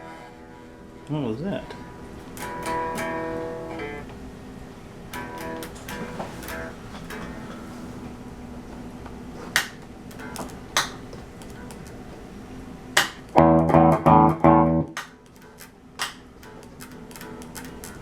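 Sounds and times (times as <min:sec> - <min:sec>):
amp hum: 0:00.0 - 0:15.1
electric guitar strummed chords: 0:02.2 - 0:04.1, 0:13.3 - 0:15.0.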